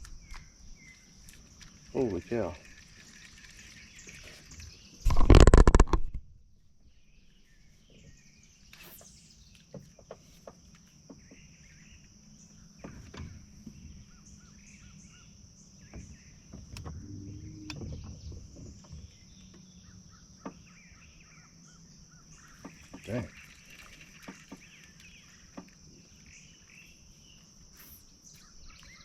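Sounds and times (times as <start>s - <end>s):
bird chirps: 13.7s - 29.0s
low rumble: 16.8s - 19.4s
high-pitched insect drone: 16.8s - 19.9s.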